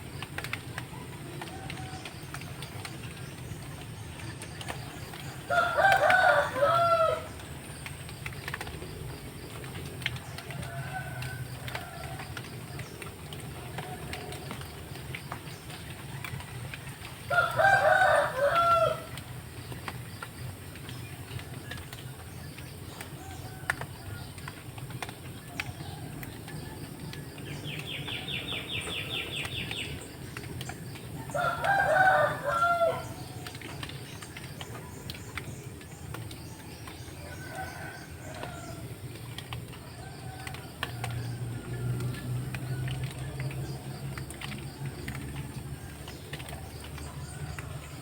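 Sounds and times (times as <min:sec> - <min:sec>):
rooster crowing: 0:05.4 - 0:07.3, 0:17.3 - 0:19.2, 0:31.2 - 0:33.3, 0:37.2 - 0:39.0.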